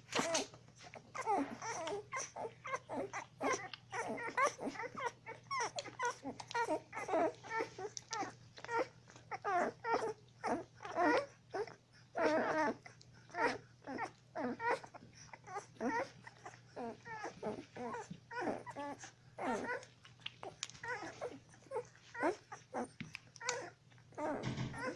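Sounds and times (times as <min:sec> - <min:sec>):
puppies squeaking and whimpering: 0:00.0 - 0:24.9.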